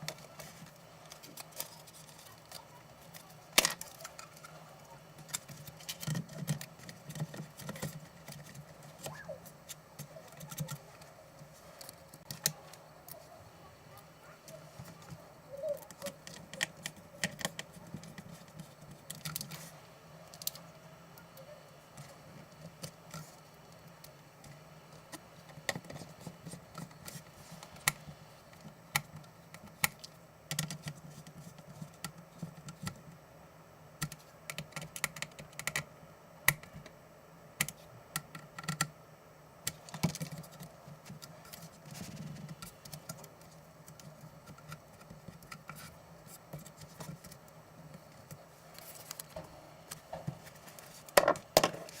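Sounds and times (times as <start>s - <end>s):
faint low hum: 0.0s - 52.0s
small parts and tools clicking: 5.2s - 13.2s.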